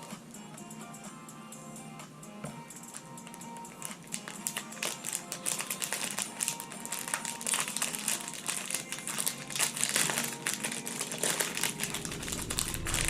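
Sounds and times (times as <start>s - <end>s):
plastic packaging crinkling: 3.8s - 13.0s.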